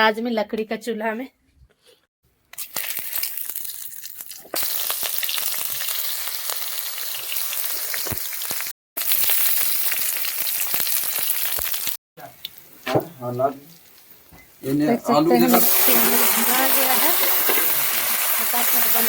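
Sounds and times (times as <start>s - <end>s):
meat sizzling in hot oil: 2.5s - 12.6s, 15.4s - 19.0s.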